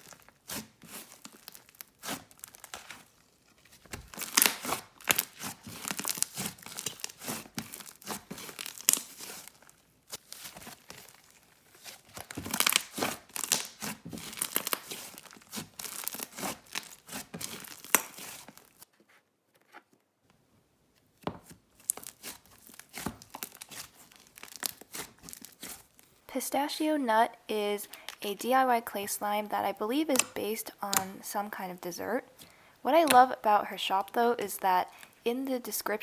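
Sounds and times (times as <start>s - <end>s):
slime crackling and popping: 0.0s - 18.8s, 21.8s - 26.0s, 29.9s - 31.5s, 32.2s - 35.2s.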